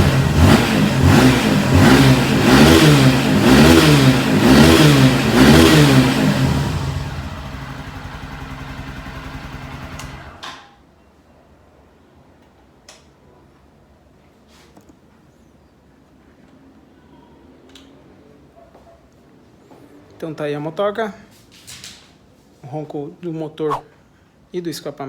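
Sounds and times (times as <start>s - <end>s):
motorcycle engine revving and idling: 0.0s - 10.4s.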